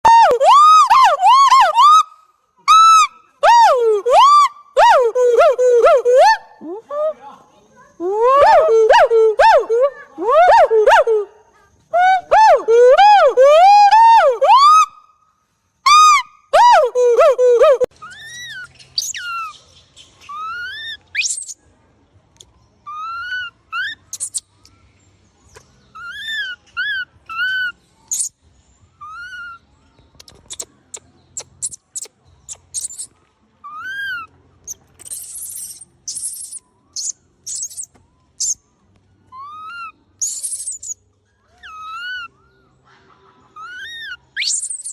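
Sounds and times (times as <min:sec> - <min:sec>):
monkey squeaking calls: 0:17.6 - 0:19.6, 0:20.2 - 0:21.6, 0:22.9 - 0:24.5, 0:26.0 - 0:28.3, 0:29.0 - 0:29.6, 0:30.2 - 0:38.6, 0:39.3 - 0:42.4, 0:43.5 - 0:44.9.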